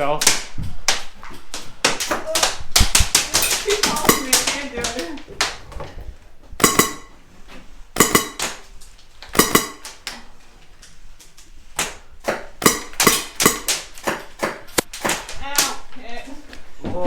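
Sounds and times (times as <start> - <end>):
airsoft guns firing: 1.8 - 5.6, 6.6 - 7.2, 8.0 - 8.7, 9.3 - 10.2, 11.8 - 15.9.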